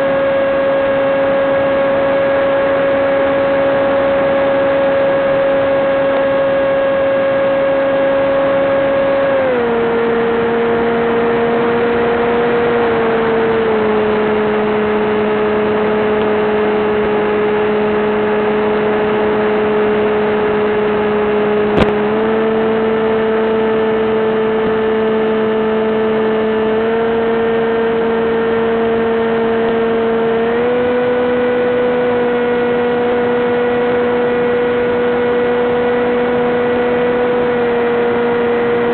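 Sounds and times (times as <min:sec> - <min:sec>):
electric motor and propeller whining: 0:00.0 - 0:38.9.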